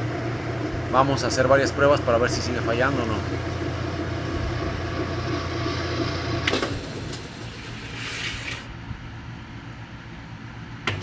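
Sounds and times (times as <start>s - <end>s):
washing machine motor humming: 0.0s - 8.8s.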